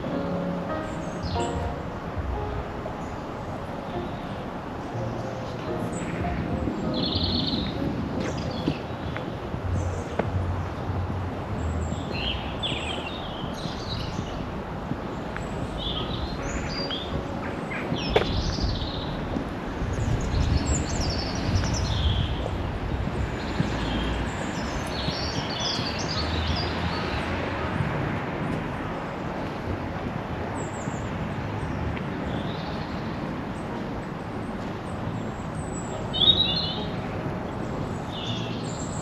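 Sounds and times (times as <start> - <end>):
small birds chirping: 23.2 - 27.4.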